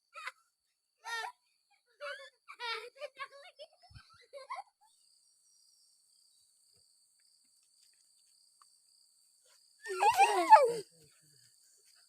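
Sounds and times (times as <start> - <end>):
crickets chirring: 4.4 - 12.0
loud wavering cry: 9.8 - 10.8.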